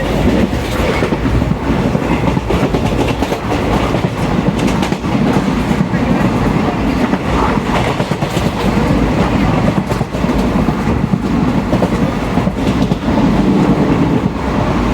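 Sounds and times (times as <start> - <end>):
train rumbling on rails: 0.0 - 14.9.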